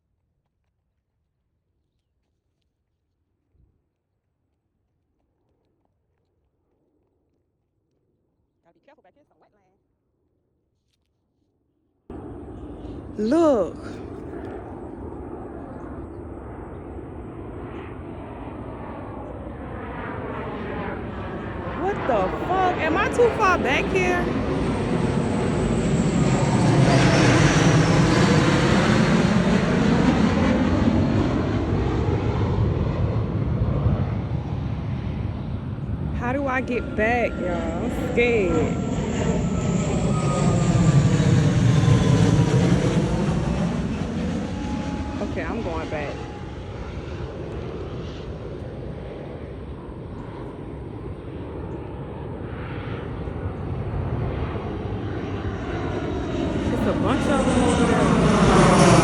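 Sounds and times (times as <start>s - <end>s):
airplane engine rumble: 12.1s - 59.0s.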